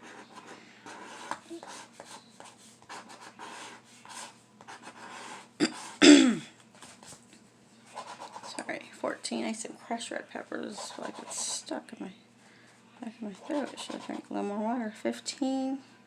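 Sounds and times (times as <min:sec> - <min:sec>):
loud cough: 0:05.6 - 0:06.5
coin scratching lottery ticket: 0:13.4 - 0:14.2.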